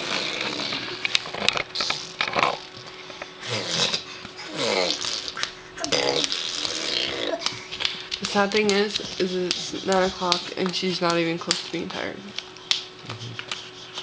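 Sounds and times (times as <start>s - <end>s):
child fake-coughing: 5.8s - 7.4s.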